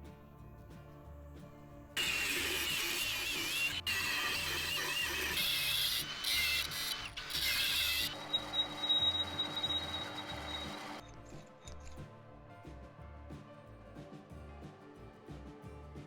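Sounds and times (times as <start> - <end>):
machine wavering whine: 2.0 - 11.1
background music with steady beat: 8.0 - 16.0
steady high tone: 8.1 - 11.0.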